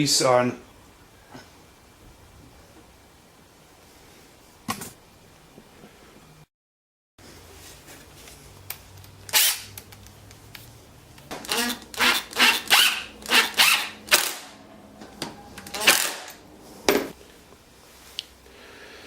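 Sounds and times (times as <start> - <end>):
screws driven into wood: 9.3 - 9.7, 11.4 - 14.5, 15.7 - 16.4.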